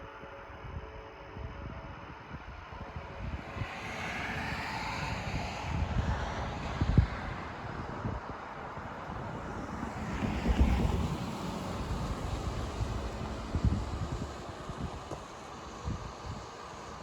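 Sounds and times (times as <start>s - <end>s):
wind buffeting microphone: 0.5s - 17.0s.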